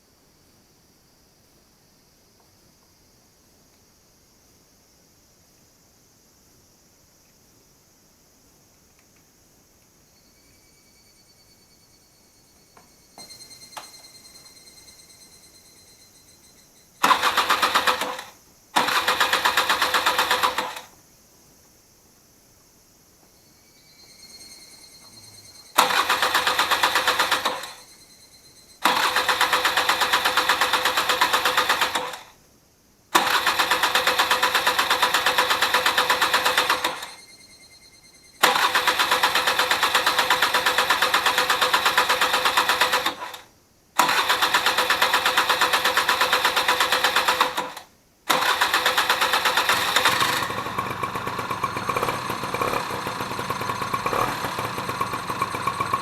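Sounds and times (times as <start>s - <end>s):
scooter engine starting and idling: 17.0s - 20.9s, 25.4s - 28.0s, 28.8s - 32.4s, 33.2s - 56.0s.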